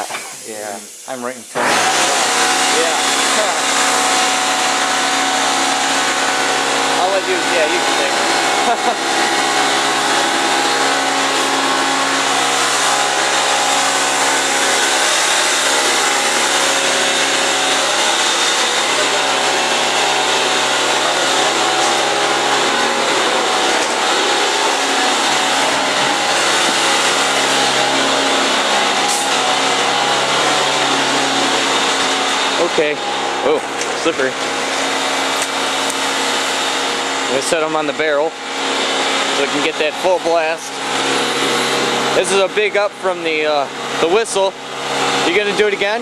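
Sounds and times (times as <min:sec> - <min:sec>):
locomotive air horn chord: 0:03.8 - 0:32.9.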